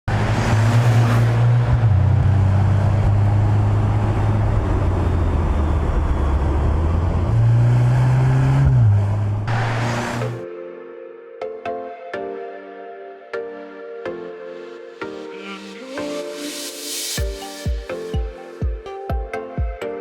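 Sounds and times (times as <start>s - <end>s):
car engine and exhaust: 0.0s - 10.4s
tyre and road noise: 0.1s - 10.4s.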